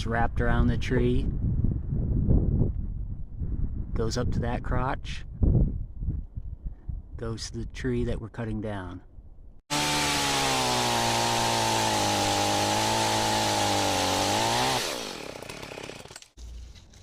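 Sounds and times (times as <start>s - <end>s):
chainsaw running at full throttle: 9.7s - 16.4s.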